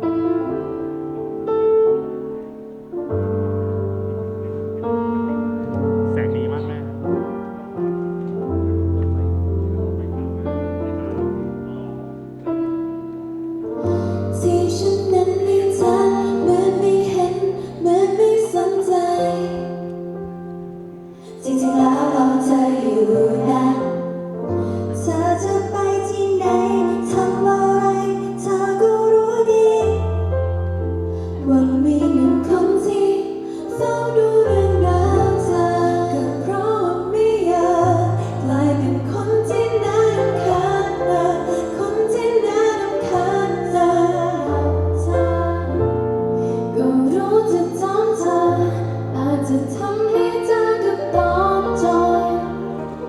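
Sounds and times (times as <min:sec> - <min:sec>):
instrumental accompaniment: 0:00.0 - 0:48.6
held bass notes: 0:03.4 - 0:07.4
woman singing pop live: 0:14.2 - 0:19.9, 0:21.3 - 0:30.3, 0:31.2 - 0:45.8, 0:46.5 - 0:52.8.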